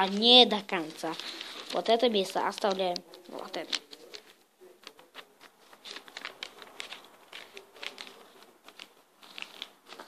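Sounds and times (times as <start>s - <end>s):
paper rustling and crinkling: 0.0s - 10.0s.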